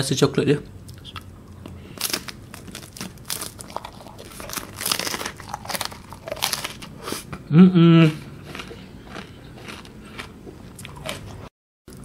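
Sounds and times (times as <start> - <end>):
packaging crinkling and rustling: 2.0 - 6.9.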